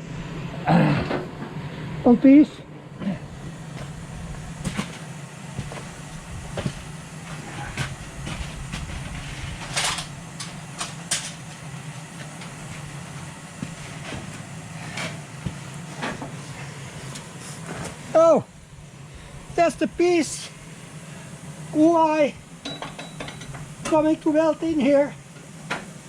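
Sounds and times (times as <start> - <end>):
steady low hum: 0.0 - 26.0
metal parts rattling: 9.1 - 11.4.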